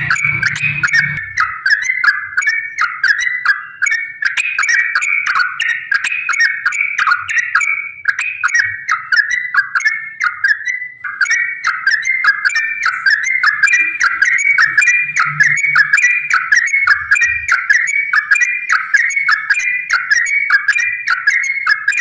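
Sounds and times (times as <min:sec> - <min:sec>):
bird chirping bubbly song: 0:00.0 - 0:22.0.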